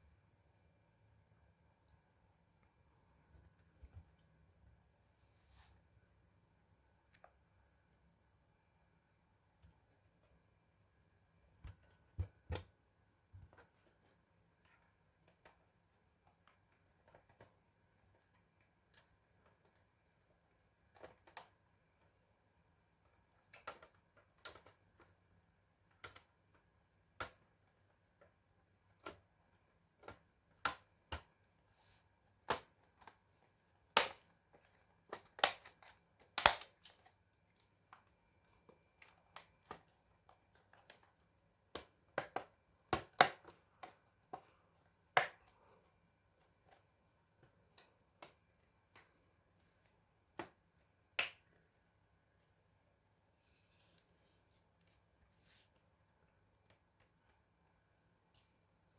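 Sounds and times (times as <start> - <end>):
clicks and taps of laptop case: 11.6 - 12.7, 41.7 - 44.5.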